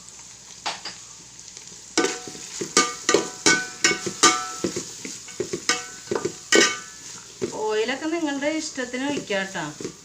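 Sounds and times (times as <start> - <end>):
frying sizzle in oil: 0.0 - 10.0
metal spatula clanking on pan: 2.0 - 7.0.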